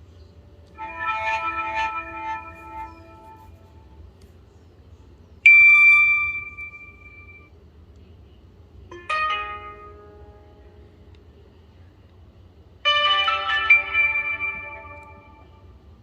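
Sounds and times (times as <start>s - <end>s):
phone multi-tone chime: 0.8s - 3.4s, 5.5s - 7.5s, 8.9s - 10.5s, 12.9s - 15.7s
phone bell-like ding: 9.0s - 10.1s, 12.9s - 15.6s.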